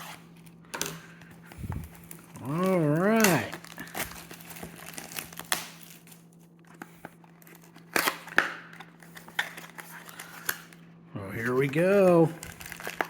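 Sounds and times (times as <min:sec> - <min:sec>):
foil pack crinkling: 0:00.0 - 0:13.0.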